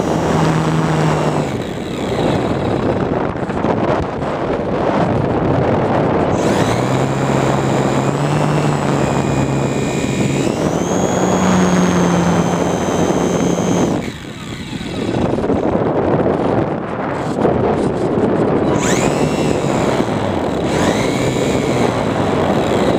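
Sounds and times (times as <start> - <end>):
model plane motor whining: 0.0 - 3.7, 6.3 - 16.0, 18.4 - 22.9
wind rush on microphone: 0.0 - 22.9.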